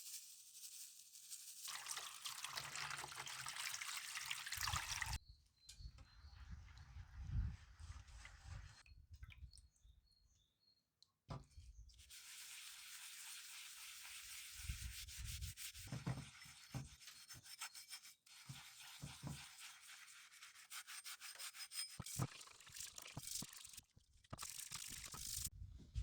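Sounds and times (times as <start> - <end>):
hand sanding: 12.1 - 22.1.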